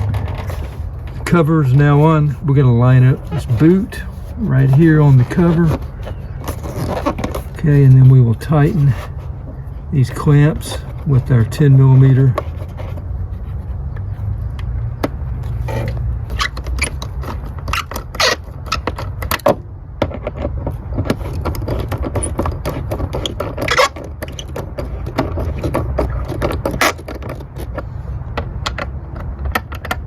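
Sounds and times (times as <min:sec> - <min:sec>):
steady low hum: 0:00.0 - 0:16.4
socket wrench clicking and scraping: 0:13.9 - 0:30.0.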